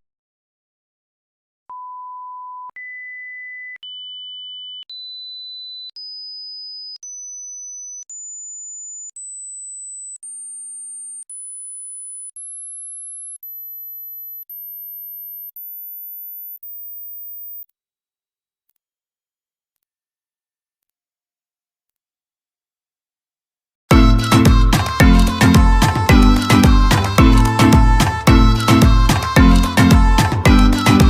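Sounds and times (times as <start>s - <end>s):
sine tone beeps rising in pitch: 1.7s - 17.6s.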